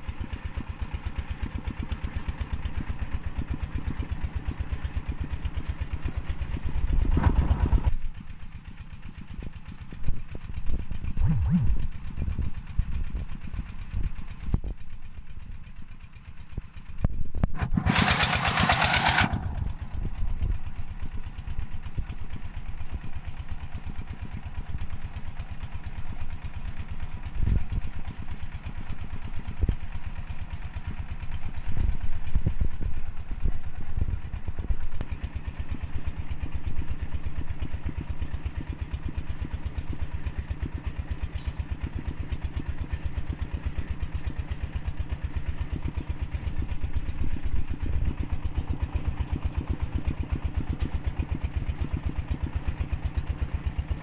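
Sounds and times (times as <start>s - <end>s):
machine chugging: 17.6s - 19.9s.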